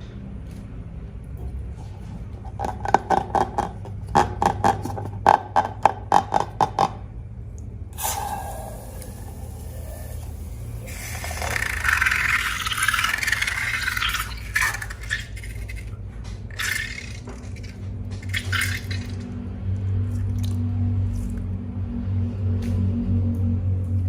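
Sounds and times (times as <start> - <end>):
wet slime squishing: 8.0 - 21.5.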